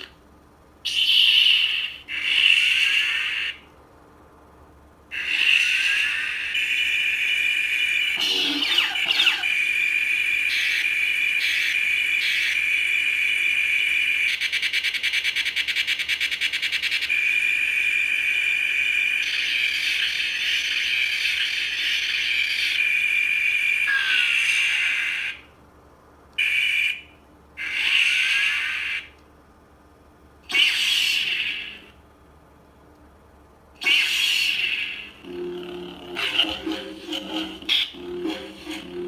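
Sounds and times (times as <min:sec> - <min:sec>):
electronic alarm tone: 0:08.1 - 0:09.7, 0:35.2 - 0:39.0.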